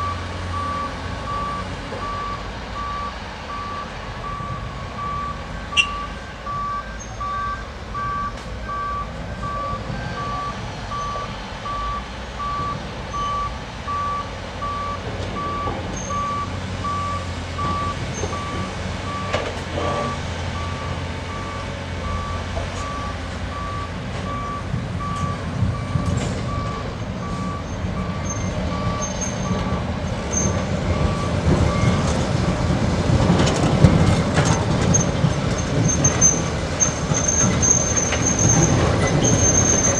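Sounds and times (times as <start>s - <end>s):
higher-pitched reversing alarm: 0.0s - 32.0s
reversing alarm beeping: 0.0s - 32.1s
diesel engine running: 0.0s - 39.9s.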